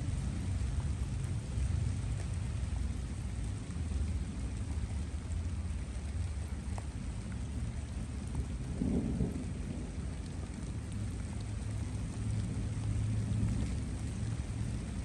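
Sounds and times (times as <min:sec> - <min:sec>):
rain falling: 0:00.0 - 0:15.0.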